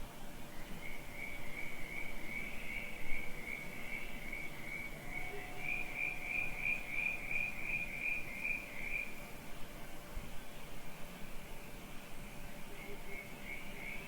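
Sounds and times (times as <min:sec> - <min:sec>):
crickets chirping: 0:00.4 - 0:09.3, 0:12.7 - 0:14.0.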